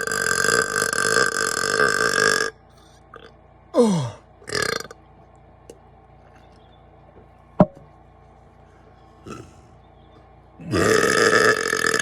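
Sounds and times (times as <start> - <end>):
man burping: 0.0 - 5.0, 9.2 - 9.6, 10.6 - 12.0.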